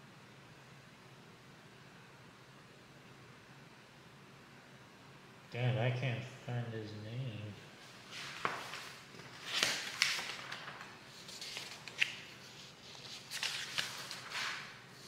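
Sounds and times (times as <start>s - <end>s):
rustling handling noise: 7.8s - 15.0s.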